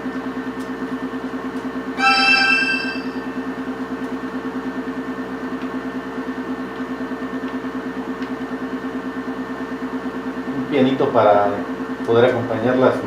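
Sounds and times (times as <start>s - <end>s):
synthesizer note: 2.0s - 3.5s.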